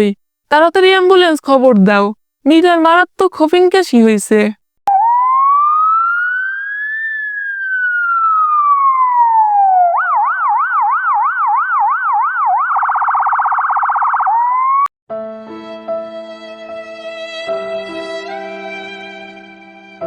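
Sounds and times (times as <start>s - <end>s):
electronic ambulance siren: 4.9s - 14.9s.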